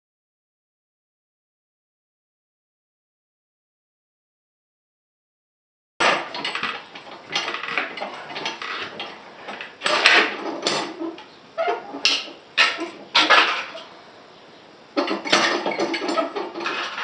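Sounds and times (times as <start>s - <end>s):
metal clanks and scrapes: 6.0s - 14.0s, 15.0s - 17.0s.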